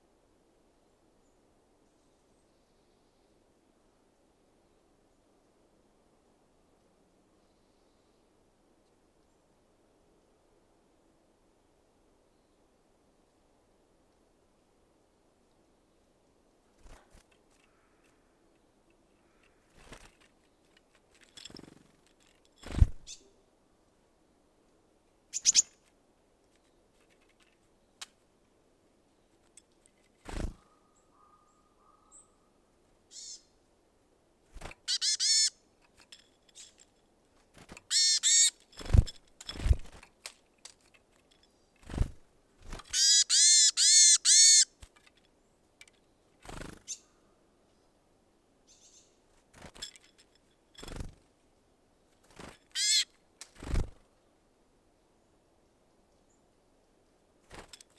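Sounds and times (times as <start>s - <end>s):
small birds buzzy calls: 25.3s - 25.9s, 33.1s - 33.6s, 34.5s - 36.8s, 37.5s - 39.8s, 41.8s - 44.9s, 46.4s - 47.4s, 52.2s - 54.0s.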